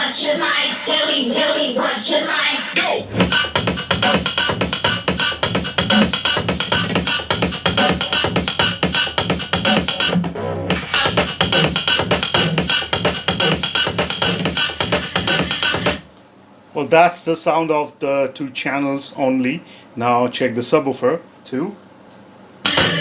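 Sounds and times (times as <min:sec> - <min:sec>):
song with driving beat on speakers: 0:00.0 - 0:16.1, 0:22.7 - 0:23.0.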